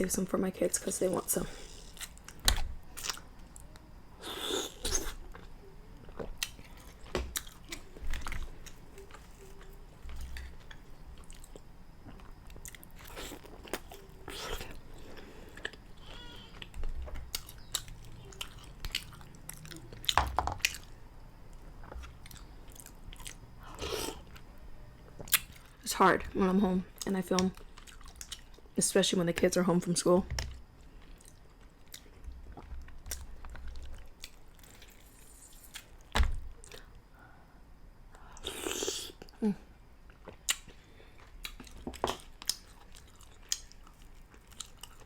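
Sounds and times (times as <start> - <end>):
person chewing mussels: 1.6 - 24.5, 27.0 - 28.7, 30.6 - 37.0, 40.0 - 45.0.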